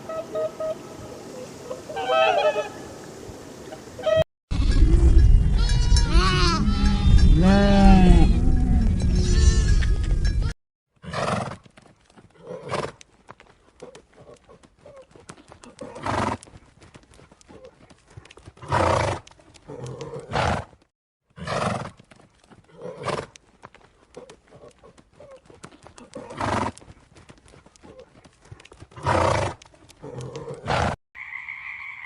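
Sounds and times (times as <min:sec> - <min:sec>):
faint hoof clicks: 0:11.6 - 0:20.8, 0:21.9 - 0:30.9.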